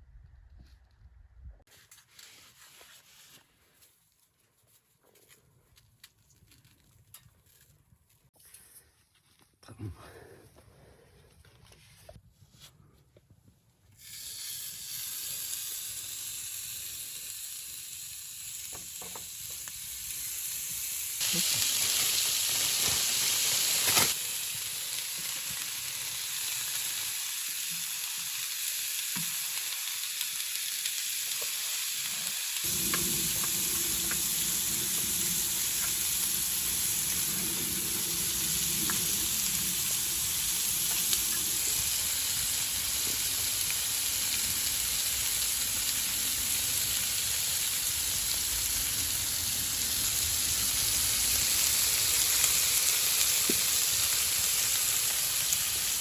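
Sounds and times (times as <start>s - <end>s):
sizzling hiss: 14.0s - 56.0s.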